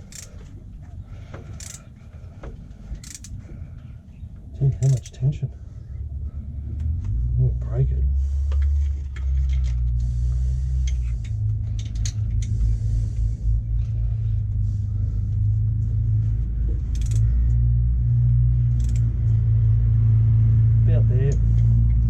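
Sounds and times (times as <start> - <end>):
wrench clicking on bolts: 0.0 - 0.5, 1.5 - 1.9, 3.0 - 3.4, 4.8 - 5.2, 16.8 - 17.6, 18.7 - 19.1
steady low rumble: 0.0 - 22.0.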